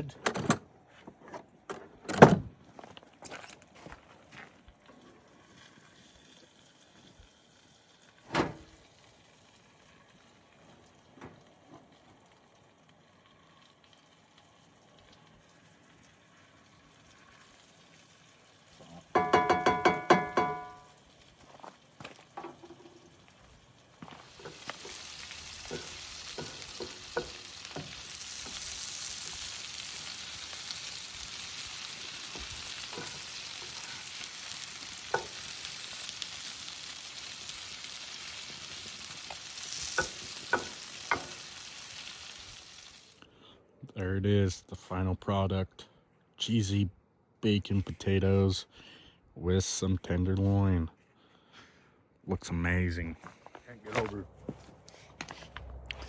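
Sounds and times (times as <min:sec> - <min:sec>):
food sizzling on a griddle: 0:05.0 - 0:43.2
spatula taps and scrapes: 0:25.6 - 0:28.0.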